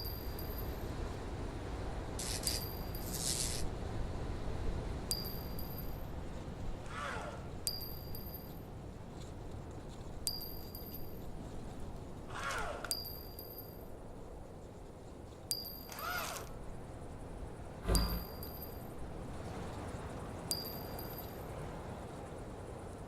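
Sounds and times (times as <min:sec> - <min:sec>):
steady hiss: 0:00.0 - 0:06.8
short high beeps with clicks: 0:17.9 - 0:18.5.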